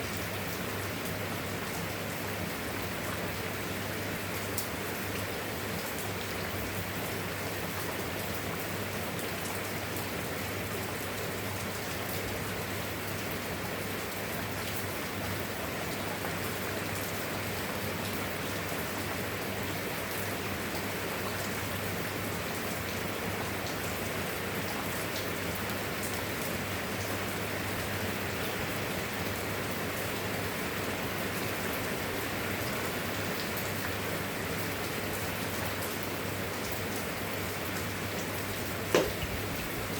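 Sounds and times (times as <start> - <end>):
steady rain falling: 0.0 - 39.9.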